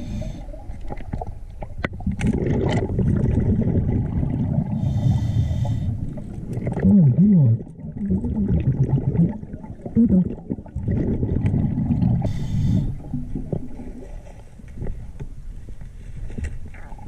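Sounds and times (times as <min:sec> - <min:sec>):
underwater rumbling and gurgling: 0:00.0 - 0:17.0.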